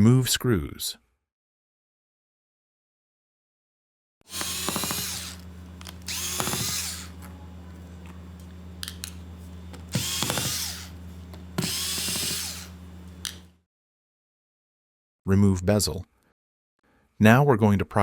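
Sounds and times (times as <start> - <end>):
electric screwdriver motor whine: 4.3 - 13.5
steady low hum: 4.3 - 13.6.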